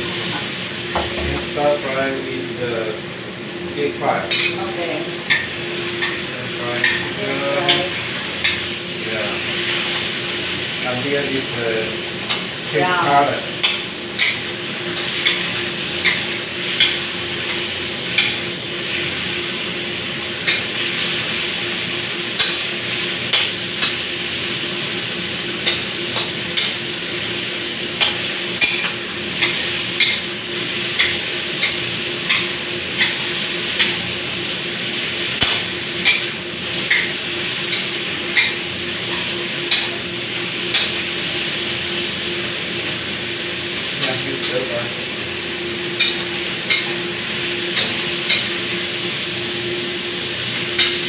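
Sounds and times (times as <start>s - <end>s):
food sizzling in hot oil: 0.0s - 51.0s.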